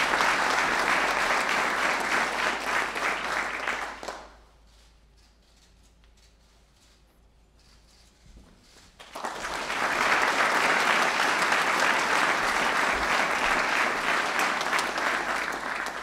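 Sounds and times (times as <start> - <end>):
audience applauding: 0.0 - 4.4, 9.0 - 16.0.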